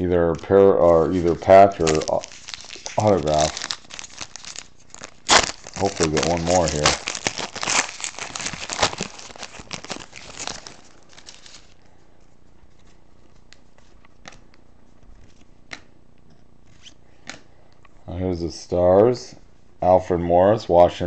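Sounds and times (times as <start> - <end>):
wrapper crinkling and tearing: 0.8 - 11.8
faint clicks of cards handled: 12.2 - 18.0.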